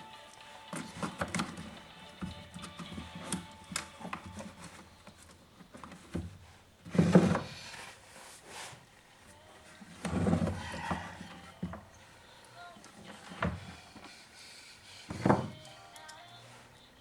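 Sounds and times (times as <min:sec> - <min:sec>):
scraping rustle: 0:04.1 - 0:12.1.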